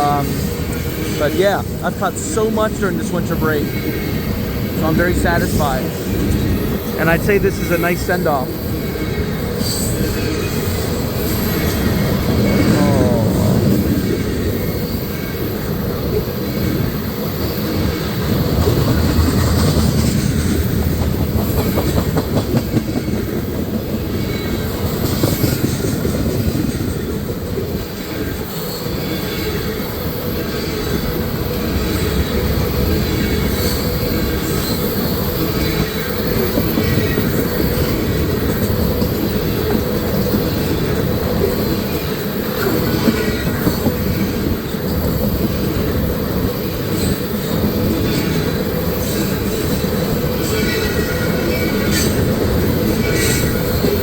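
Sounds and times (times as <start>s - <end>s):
train wheels running on rails: 0.0s - 54.0s
rail joint clicks: 13.8s - 54.0s.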